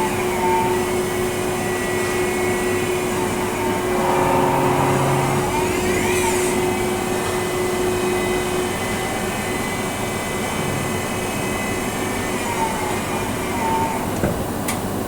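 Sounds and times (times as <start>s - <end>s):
lathe machining noise: 0.0s - 14.0s
spindle whines: 1.7s - 9.5s.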